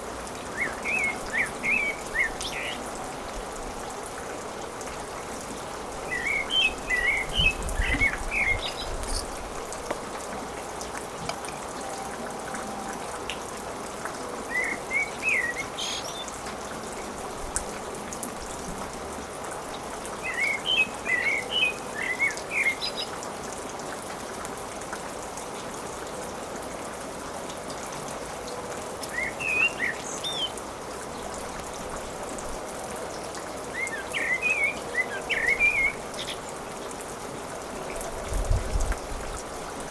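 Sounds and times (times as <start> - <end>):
birds chirping: 6.1 - 9.3.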